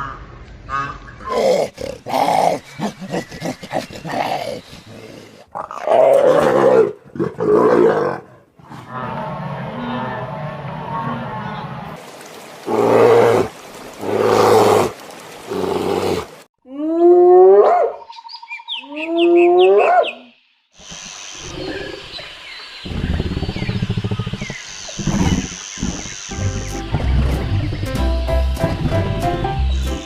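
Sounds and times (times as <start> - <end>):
rough pulsing growls: 22.8 - 27.8.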